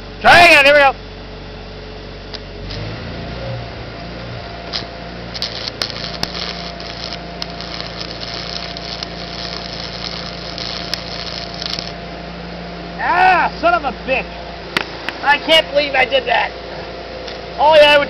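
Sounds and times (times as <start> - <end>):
welding machine hum: 3.8 - 13.0
welding arc crackling hiss: 4.6 - 12.0.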